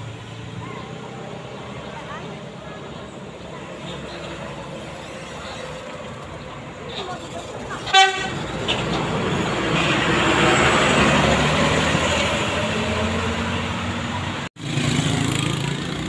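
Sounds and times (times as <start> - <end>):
bus driving past: 0.0 - 16.0.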